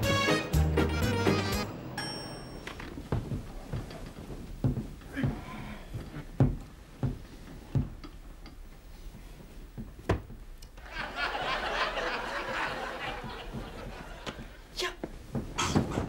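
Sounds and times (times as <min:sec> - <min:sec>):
audience laughter: 0:10.8 - 0:14.6.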